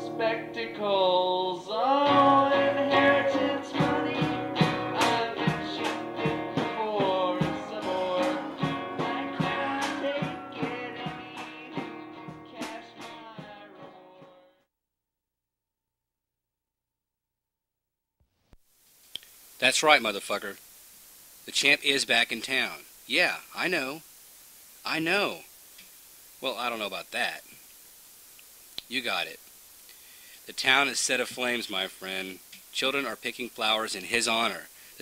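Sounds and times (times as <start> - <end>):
song with guitar and singing: 0.0 - 14.6.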